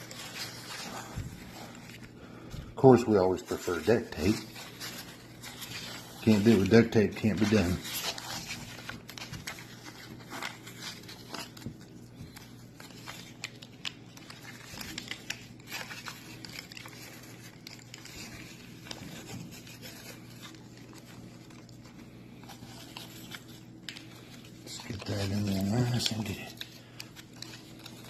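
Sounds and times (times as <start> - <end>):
cardboard rubbing: 0.0 - 2.1, 3.5 - 13.5.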